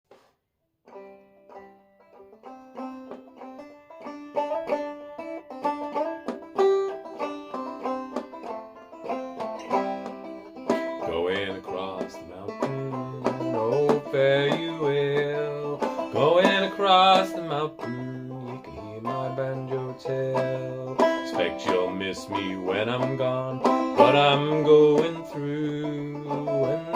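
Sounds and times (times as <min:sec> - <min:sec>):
banjo picking: 0:00.1 - 0:26.9
person singing: 0:10.7 - 0:26.9.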